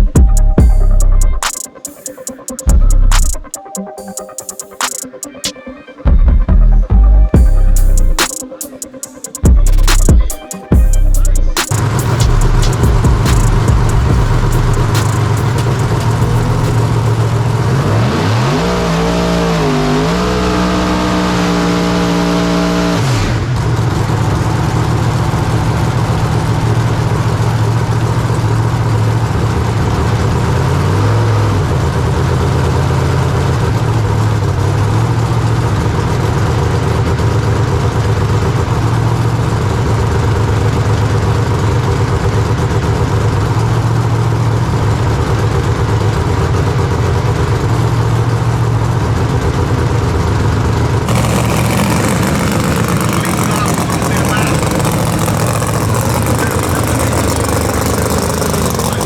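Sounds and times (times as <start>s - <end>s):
drag car engine revving: 10.9s - 59.0s.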